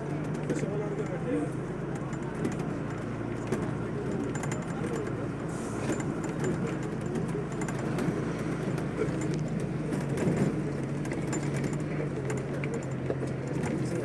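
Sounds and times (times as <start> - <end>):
road noise: 0.0 - 14.0
vehicle engine droning: 0.0 - 14.0
small clicks and rattles: 0.1 - 5.2, 5.9 - 14.0.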